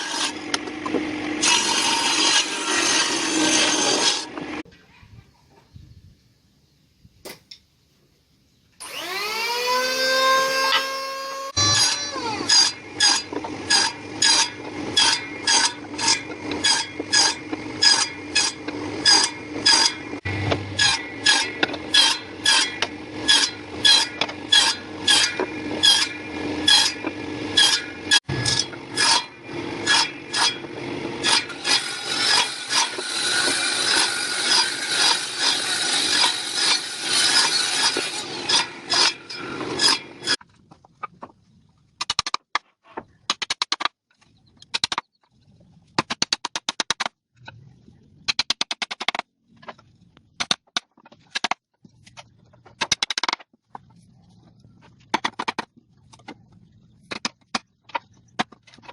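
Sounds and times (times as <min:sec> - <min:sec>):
motor humming: 0:08.8 - 0:17.8
rasping strokes on wood: 0:12.4 - 0:40.4.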